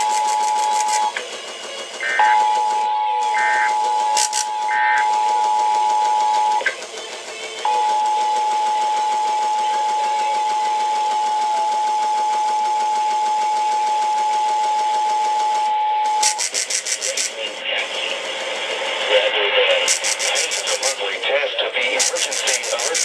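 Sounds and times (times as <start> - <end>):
broadcast hiss: 0.0 - 1.1, 3.3 - 5.0, 16.2 - 23.0
two-tone alert signal: 0.0 - 1.2, 2.0 - 6.7, 7.6 - 13.7.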